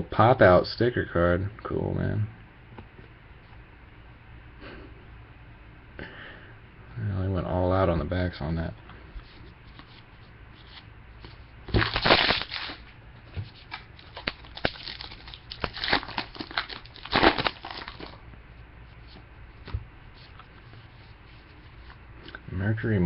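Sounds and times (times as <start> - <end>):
cards being handled: 9.2 - 12.8, 13.4 - 18.2
card pack wrapper tearing and crinkling: 11.7 - 12.8, 13.6 - 18.2.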